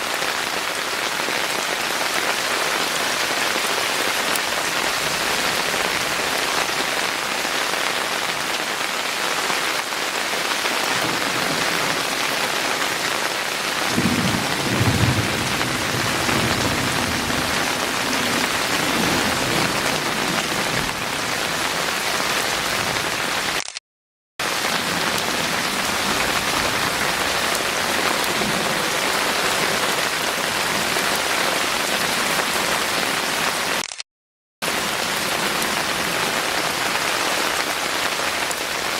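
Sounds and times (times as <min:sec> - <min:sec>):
heavy rain falling: 0:00.0 - 0:23.8, 0:24.4 - 0:34.0, 0:34.6 - 0:38.9
thunder rumbling: 0:13.8 - 0:21.7.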